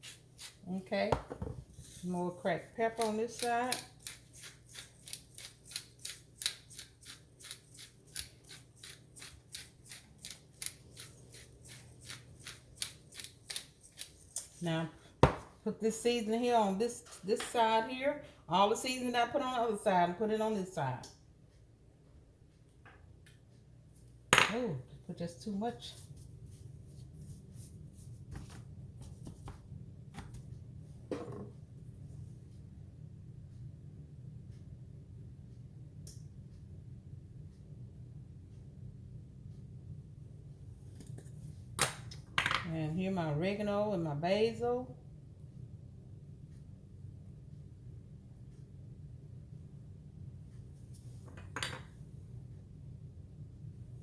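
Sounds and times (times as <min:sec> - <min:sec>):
seasoning rustling on meat: 0:00.0 - 0:00.7, 0:01.7 - 0:14.6
pepper mill grinding: 0:01.8 - 0:14.6.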